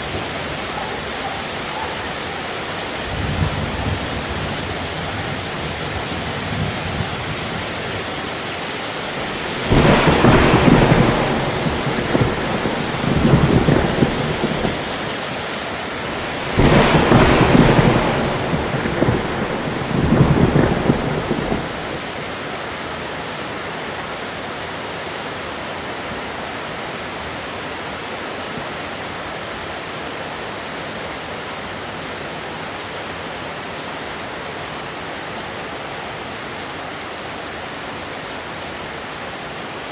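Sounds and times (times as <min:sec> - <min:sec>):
steady rain: 0:00.0 - 0:39.9
thunder rolling: 0:02.6 - 0:22.1.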